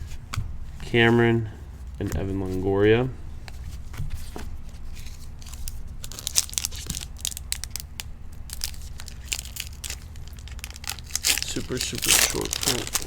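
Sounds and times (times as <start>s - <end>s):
foil wrappers crinkling and tearing: 5.0s - 13.0s.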